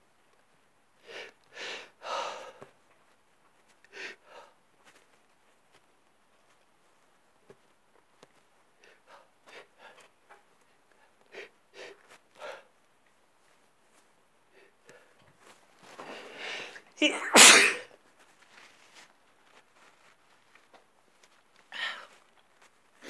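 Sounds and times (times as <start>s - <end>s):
man sneezing: 17.1s - 17.9s.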